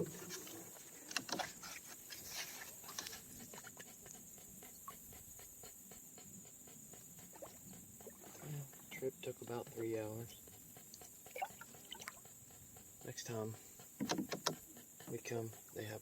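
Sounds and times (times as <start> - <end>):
insects droning: 0.0 - 16.0
light clicks and knocks: 14.0 - 14.6.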